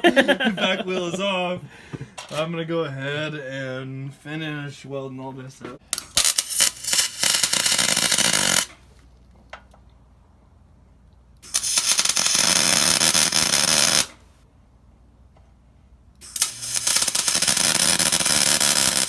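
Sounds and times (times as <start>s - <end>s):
welding arc crackling: 5.9s - 8.9s, 11.4s - 14.3s, 16.2s - 19.0s.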